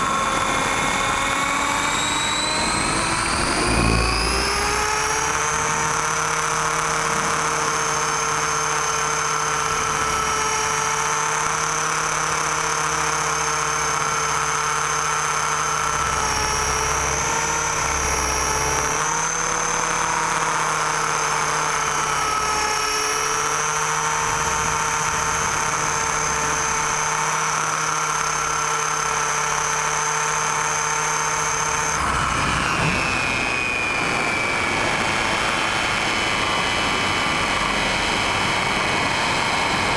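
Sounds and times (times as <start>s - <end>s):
model aircraft motor whining: 0.0s - 39.9s.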